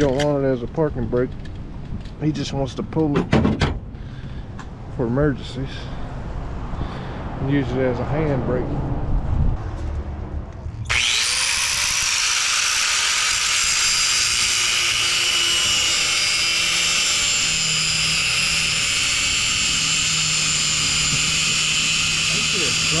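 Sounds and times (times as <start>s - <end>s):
angle grinder grinding metal: 10.9s - 23.0s.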